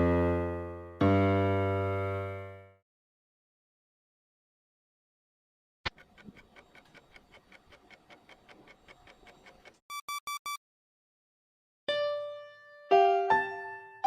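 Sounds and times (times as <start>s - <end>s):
fast clock-like ticking: 5.9s - 9.8s
short high electronic beeps: 9.9s - 10.6s.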